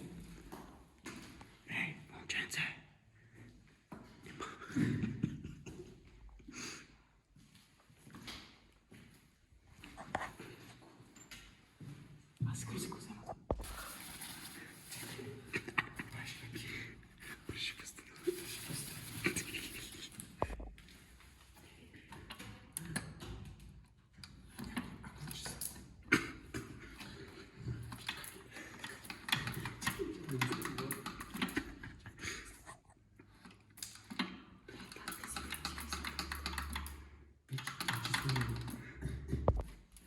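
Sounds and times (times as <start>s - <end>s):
rustling noise: 13.6s - 15.5s
rapid irregular clicking and crackling: 17.4s - 32.6s, 33.2s - 40.0s.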